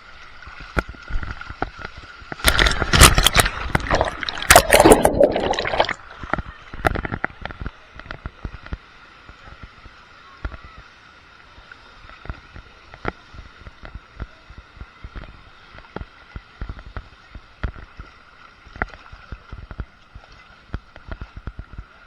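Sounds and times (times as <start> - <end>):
water rushing: 0.3 - 7.2
water splashing: 0.4 - 7.2
clicks and knocks: 2.4 - 6.4.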